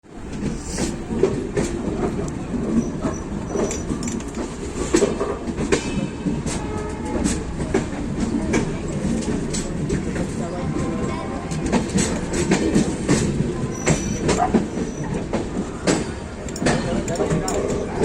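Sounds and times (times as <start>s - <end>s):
train rumbling: 0.0s - 18.0s
wheels clattering over rail joints: 11.5s - 18.0s.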